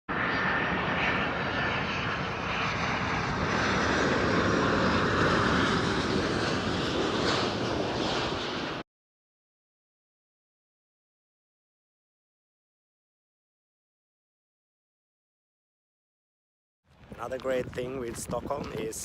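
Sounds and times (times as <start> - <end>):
airliner engines roaring: 0.1 - 8.9, 16.9 - 19.0.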